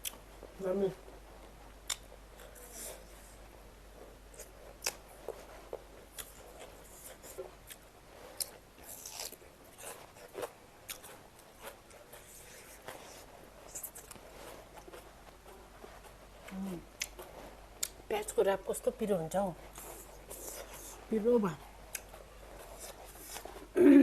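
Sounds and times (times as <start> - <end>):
person chewing: 0.0 - 0.5, 1.4 - 18.1, 19.6 - 24.0
wet mouth clicks: 1.9 - 2.1, 17.8 - 18.0.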